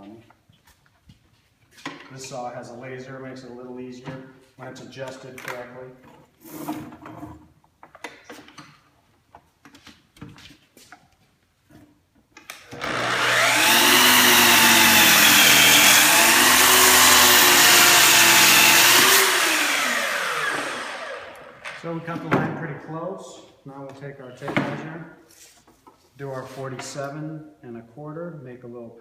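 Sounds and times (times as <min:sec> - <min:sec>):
miter saw cutting wood: 0:12.6 - 0:21.8.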